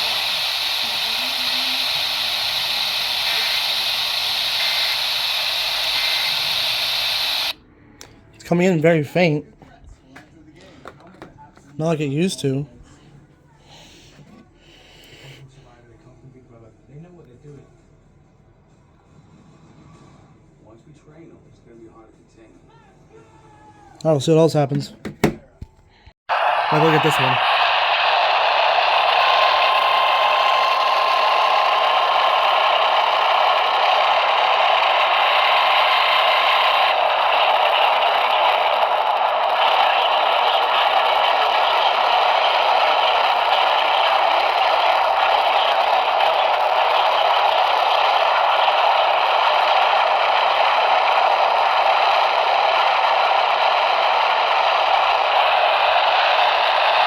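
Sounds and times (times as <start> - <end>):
loud radio static: 0.0 - 7.6, 26.3 - 57.0.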